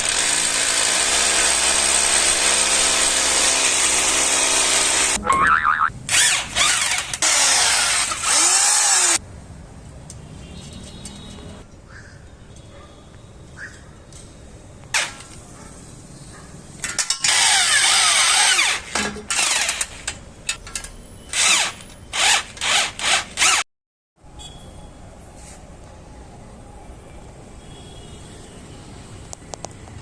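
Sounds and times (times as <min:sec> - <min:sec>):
power drill bursts: 0:06.1 - 0:09.2, 0:17.2 - 0:20.0, 0:21.3 - 0:23.6.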